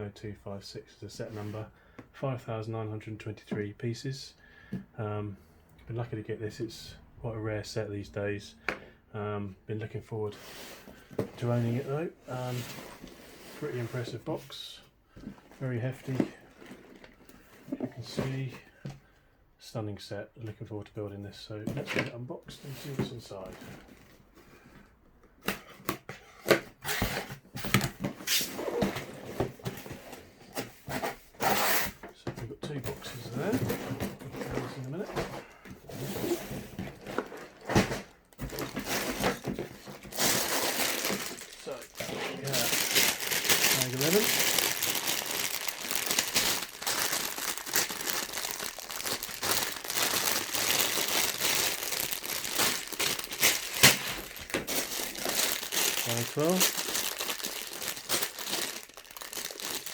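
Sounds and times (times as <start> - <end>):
plastic bags crinkling: 16.2 - 17.5, 36.8 - 59.9
loose plastic bricks shifting: 36.8 - 59.9.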